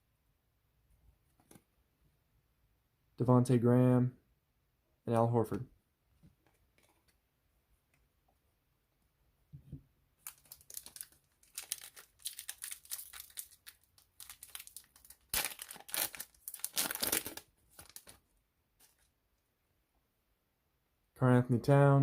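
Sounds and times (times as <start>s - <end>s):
card pack wrapper tearing: 10.2s - 18.2s.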